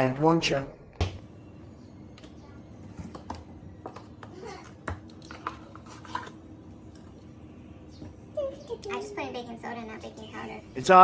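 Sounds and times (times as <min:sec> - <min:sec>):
low steady hum: 0:00.0 - 0:11.0
child murmuring: 0:04.3 - 0:04.8.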